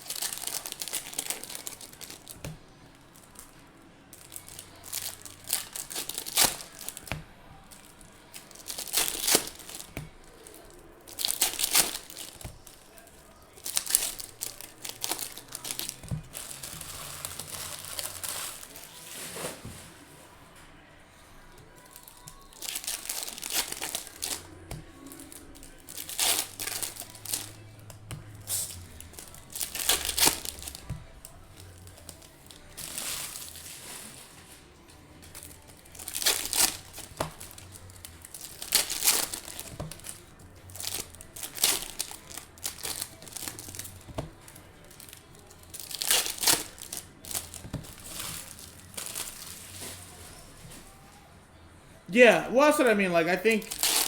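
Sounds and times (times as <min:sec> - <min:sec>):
foil wrappers tearing and crinkling: 0:00.0 - 0:19.7, 0:21.5 - 0:34.6, 0:35.2 - 0:51.0, 0:52.2 - 0:54.0.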